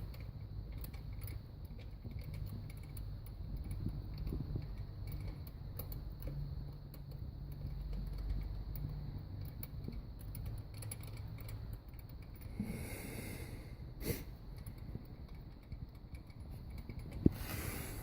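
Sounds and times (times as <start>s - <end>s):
light ticking rattle: 0.0s - 12.9s, 13.7s - 18.0s.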